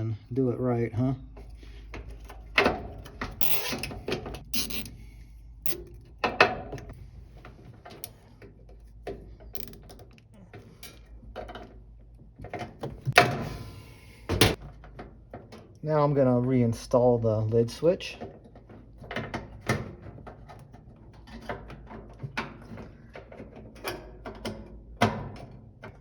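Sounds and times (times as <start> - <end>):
zip tie ratchet zipping: 3.4 - 4.9, 9.6 - 9.8.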